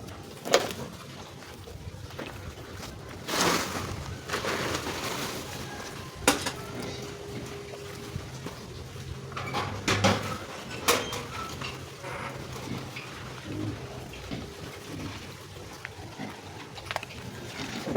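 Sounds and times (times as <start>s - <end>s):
rustling scrape: 3.0s - 15.4s
hard objects knocking and clattering: 9.2s - 12.7s.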